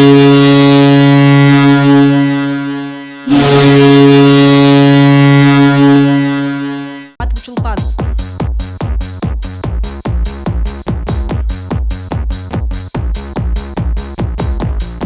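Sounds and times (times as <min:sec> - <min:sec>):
deep goal horn blasts: 0:00.0 - 0:07.2
electronic dance music: 0:07.2 - 0:15.0.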